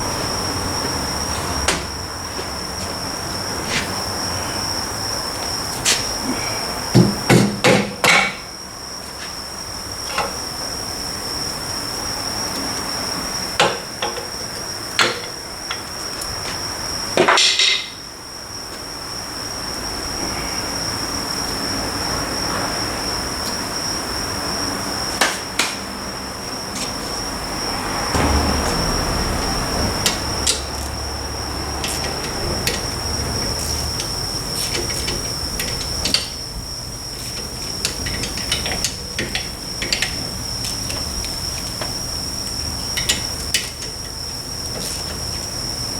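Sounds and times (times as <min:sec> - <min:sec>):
insect chirring: 0:26.1 - 0:45.9
hand tools tapping on metal: 0:31.7 - 0:45.6.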